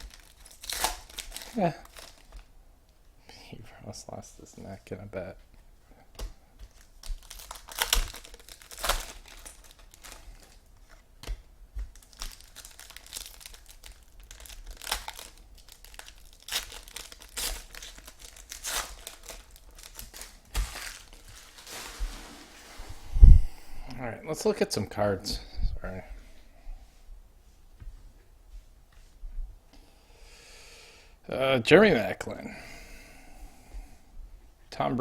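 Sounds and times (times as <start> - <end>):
wrappers crinkling and tearing: 0.0 - 2.5, 6.7 - 22.9.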